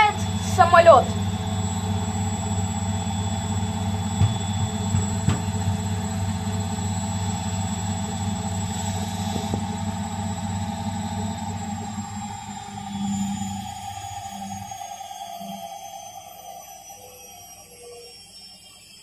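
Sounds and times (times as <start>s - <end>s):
washing machine spinning: 0.0s - 19.0s
light knocks: 4.2s - 5.8s.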